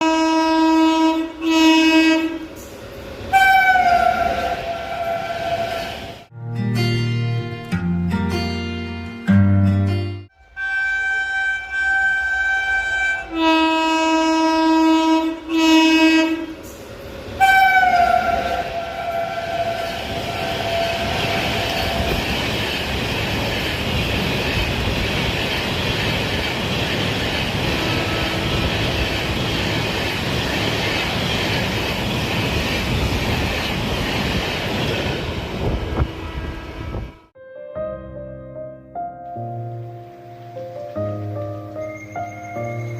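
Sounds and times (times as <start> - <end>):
train horn blasts: 0.0 - 2.6, 3.3 - 6.3, 10.3 - 16.7, 17.4 - 22.6, 27.6 - 29.5, 35.6 - 37.4
train coaches rushing and clattering: 0.6 - 6.3, 12.8 - 37.3.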